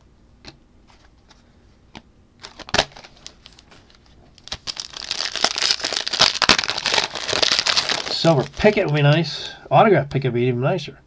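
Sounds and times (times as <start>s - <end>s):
trading cards being handled: 2.4s - 9.3s
foil wrapper crinkling: 2.4s - 9.5s.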